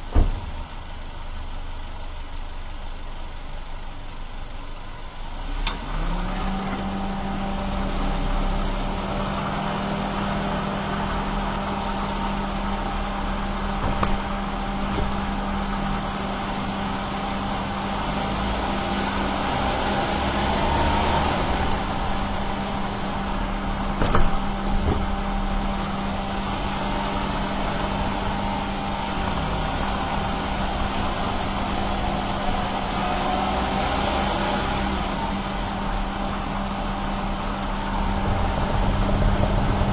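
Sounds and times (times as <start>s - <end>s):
car engine and road noise: 0.0s - 39.9s
short knocks: 13.8s - 15.3s, 24.0s - 25.2s.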